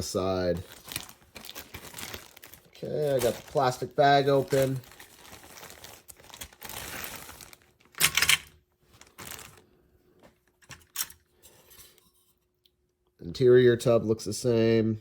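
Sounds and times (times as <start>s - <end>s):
plastic bag crinkling: 0.0s - 9.8s.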